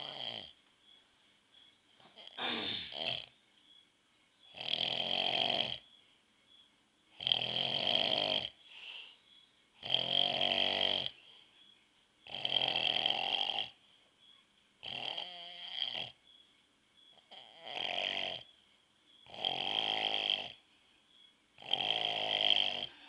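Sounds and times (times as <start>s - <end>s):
man snoring: 0.0s - 0.5s, 2.2s - 3.3s, 4.5s - 5.8s, 7.2s - 8.6s, 9.8s - 11.2s, 12.3s - 13.8s, 14.8s - 16.2s, 17.3s - 18.5s, 19.2s - 20.6s, 21.6s - 23.0s.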